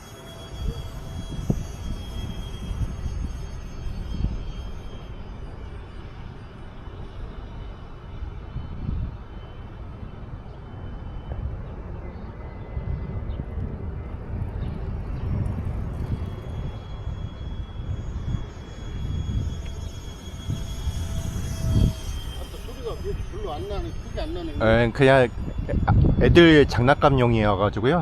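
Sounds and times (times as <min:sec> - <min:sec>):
high whine of electric jet fan: 0:00.0 - 0:28.0
wind rumbling on microphone: 0:00.0 - 0:28.0.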